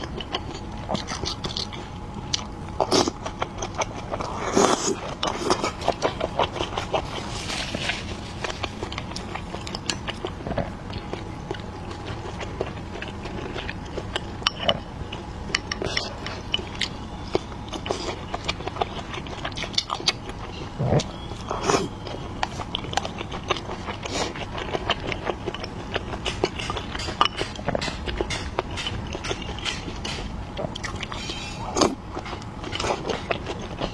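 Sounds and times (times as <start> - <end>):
chewing with wet mouth clicks: 0.0 - 7.4, 8.4 - 33.9.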